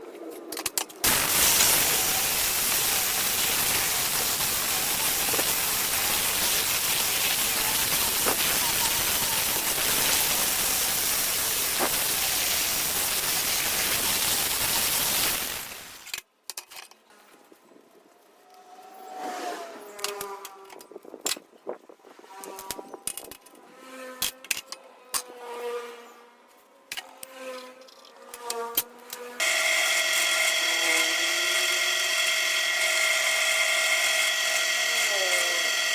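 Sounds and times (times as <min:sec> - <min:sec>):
welding arc hissing and crackling: 0:01.0 - 0:16.1, 0:29.4 - 0:35.9.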